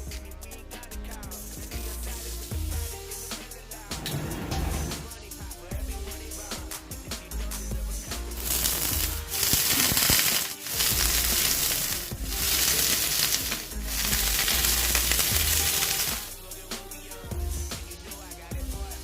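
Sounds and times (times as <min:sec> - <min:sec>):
background music with bass: 0:00.0 - 0:19.0
loud even hissing: 0:08.1 - 0:17.0.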